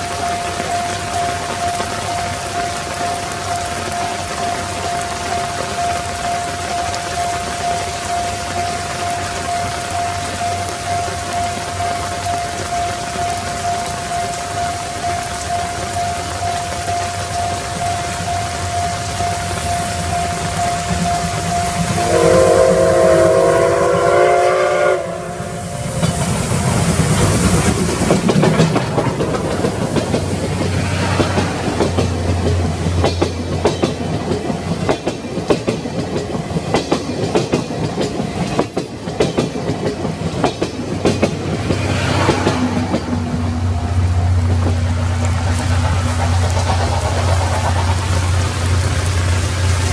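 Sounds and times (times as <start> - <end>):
train rumble: 0.0 - 49.9
steam locomotive whistle: 19.8 - 26.5
train wheels clattering on rails: 25.8 - 49.9.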